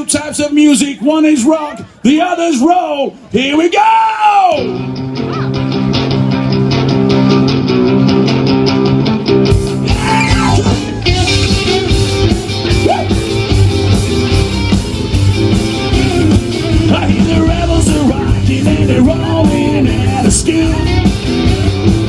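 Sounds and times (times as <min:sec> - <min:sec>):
bass line: 0:04.5 - 0:22.0
electric guitar rhythm: 0:04.5 - 0:22.0
drums and cymbals: 0:09.4 - 0:22.0.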